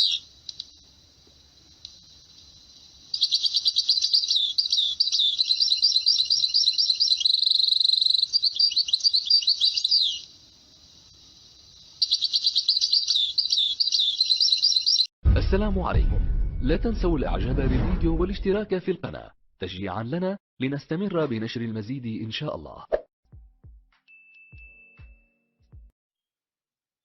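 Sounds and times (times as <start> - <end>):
finch song with fast trills: 3.2 - 10.3.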